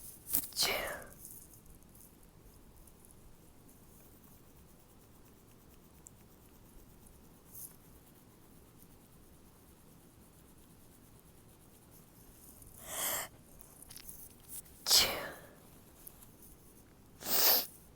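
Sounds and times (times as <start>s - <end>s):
stifled sneeze: 14.9s - 15.5s, 17.2s - 17.7s.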